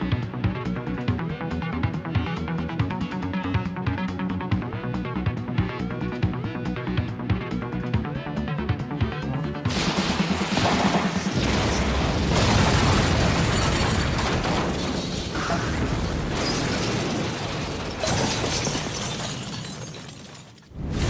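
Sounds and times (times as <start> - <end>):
clattering crashing sound effects: 9.7 - 21.0.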